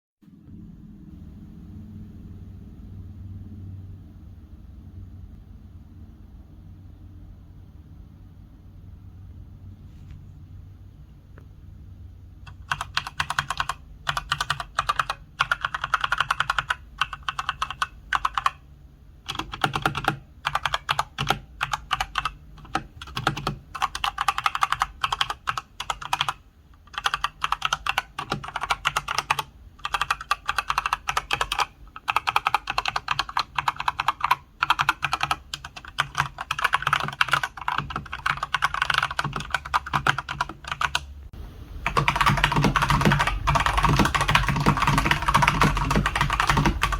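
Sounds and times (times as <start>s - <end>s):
fast typing on mechanical keyboard: 12.5s - 18.6s, 19.2s - 41.1s, 41.8s - 46.9s.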